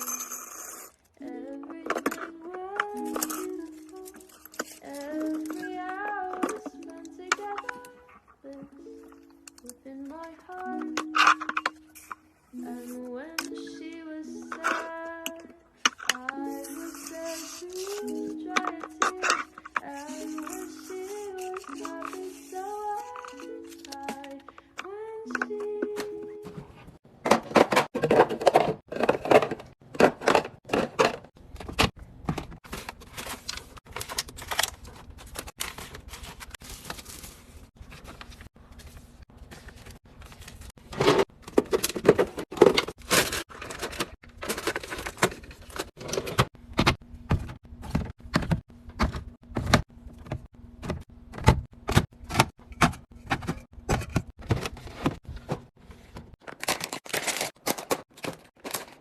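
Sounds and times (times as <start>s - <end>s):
containers clattering on shelves: 25.4s - 33.4s, 40.8s - 59.0s.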